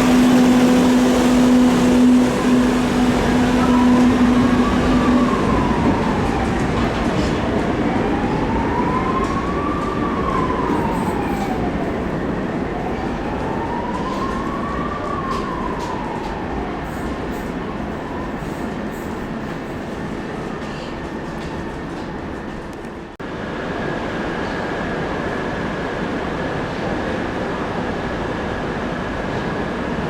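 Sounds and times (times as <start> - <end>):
siren wailing: 0.0 - 18.4
train rumbling past: 0.0 - 30.0.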